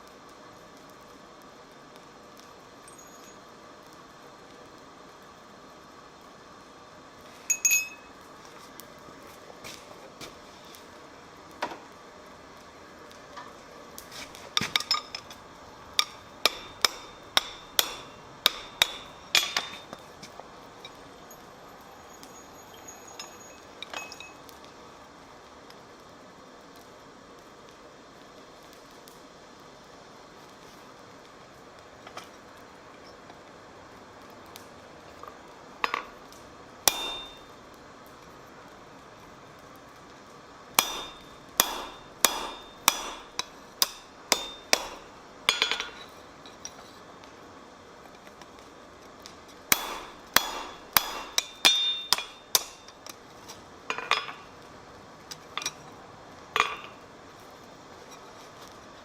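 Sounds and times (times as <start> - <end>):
hammer striking steel on anvil: 16.0 - 20.0, 36.9 - 37.5, 40.8 - 46.1, 49.7 - 53.1.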